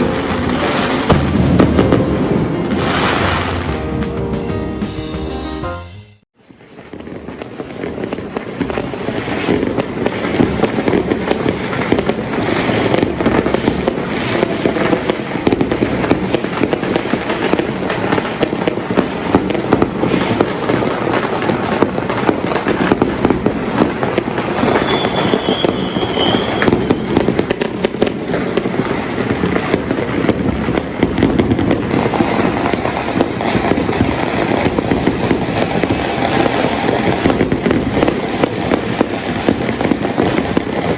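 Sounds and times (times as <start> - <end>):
firecrackers crackling and popping: 0.0 - 4.0, 6.4 - 40.9
short high whistle: 24.8 - 27.0.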